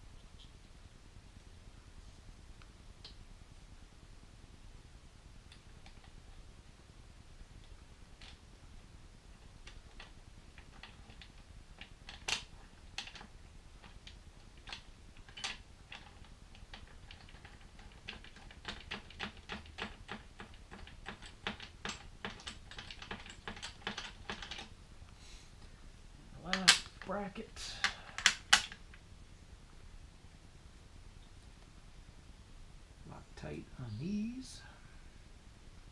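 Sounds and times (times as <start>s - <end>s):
metallic clicks of bolts and tool: 27.7s - 28.9s.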